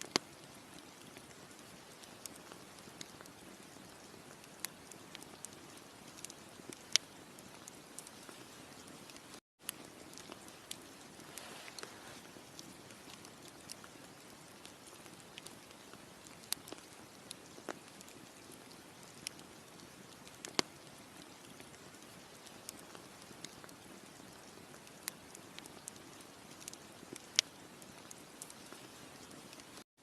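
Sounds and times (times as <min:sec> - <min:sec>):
soft fire hiss: 0:00.0 - 0:29.8
burning wood popping and snapping: 0:09.1 - 0:29.7.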